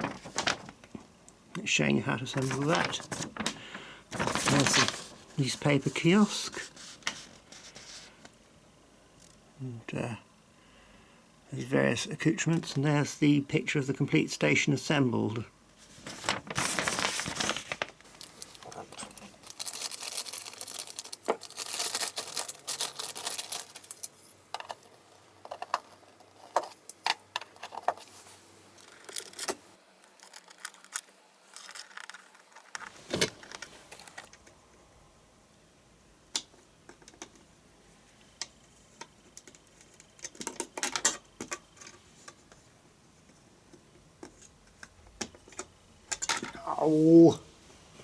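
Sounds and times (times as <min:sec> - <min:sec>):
rustling: 0:00.0 - 0:01.1, 0:02.3 - 0:08.3, 0:15.8 - 0:34.4
plastic parts clicking and clattering: 0:16.5 - 0:28.1, 0:28.8 - 0:34.6, 0:38.4 - 0:42.6, 0:44.2 - 0:46.6.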